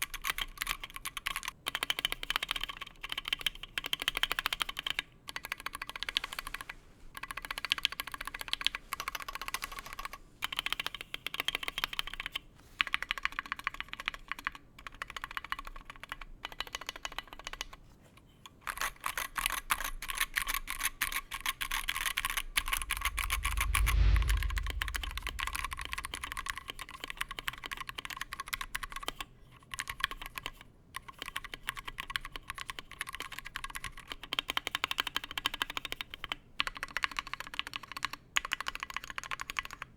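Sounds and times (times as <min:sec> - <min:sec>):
low rumble: 0:22.4 - 0:27.3.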